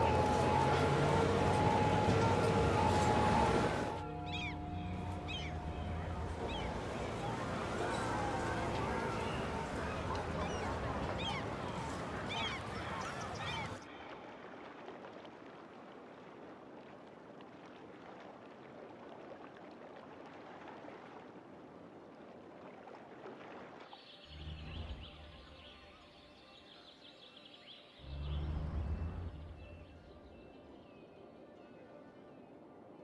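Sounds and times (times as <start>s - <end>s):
faint high bird chirps: 0.0s - 13.8s
low rumbles: 0.0s - 13.8s, 28.0s - 30.3s.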